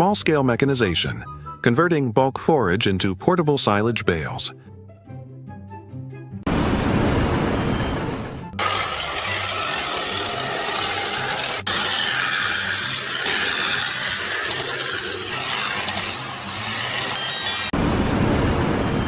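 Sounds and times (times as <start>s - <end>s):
machinery running: 6.5s - 19.0s.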